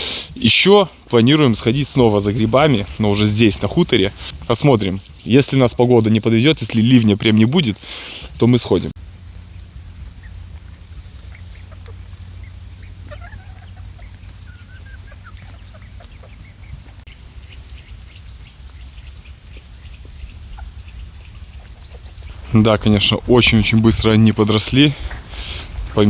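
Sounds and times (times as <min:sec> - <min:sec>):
chickens clucking: 0:00.0 - 0:26.0
low rumble: 0:08.9 - 0:17.1.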